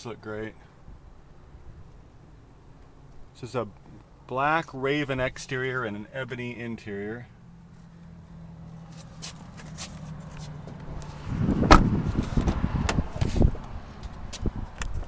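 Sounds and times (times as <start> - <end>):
rustling: 7.7 - 14.2.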